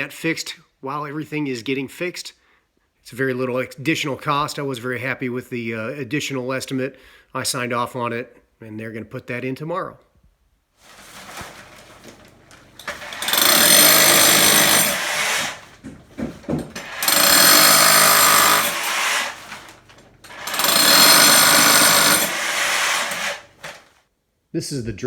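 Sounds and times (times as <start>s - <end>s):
power tool motor whine: 12.3s - 15.9s, 16.6s - 23.8s
scattered knocks: 13.0s - 18.9s.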